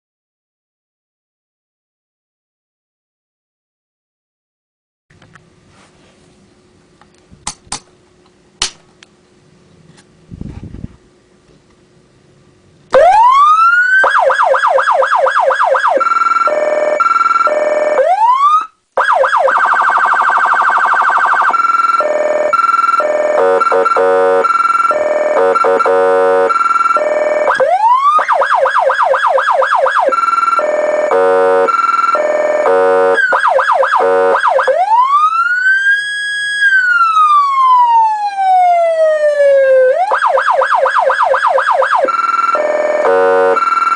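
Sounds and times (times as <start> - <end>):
electronic siren wailing and yelping: 12.9 - 43.9.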